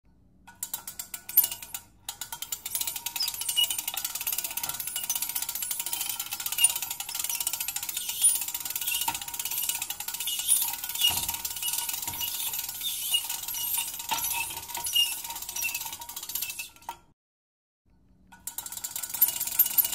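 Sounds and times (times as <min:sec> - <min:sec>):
squeaking rattling metal: 0:01.1 - 0:16.9.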